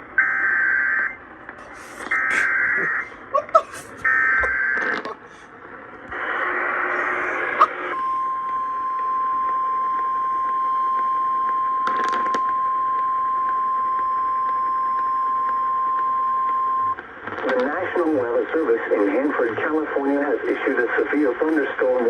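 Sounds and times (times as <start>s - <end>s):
radio static: 1.6s - 8.0s, 17.2s - 22.0s
steady warning alarm tone: 2.0s - 3.1s, 4.0s - 4.9s, 6.8s - 17.0s.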